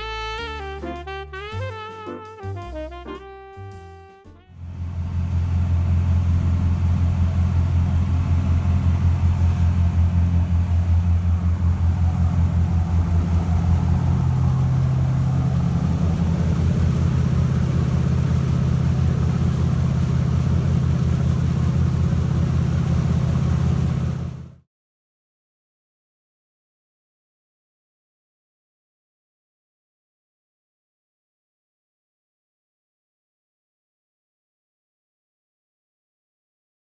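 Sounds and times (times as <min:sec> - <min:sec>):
boat engine droning: 0:00.0 - 0:24.6.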